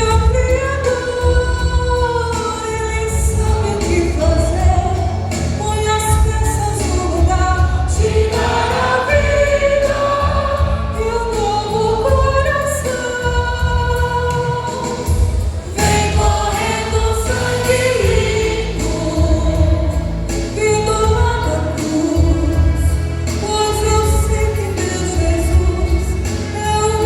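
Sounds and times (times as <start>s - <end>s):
vocal group singing gospel: 6.7s - 23.2s
steady low beat: 15.1s - 21.4s.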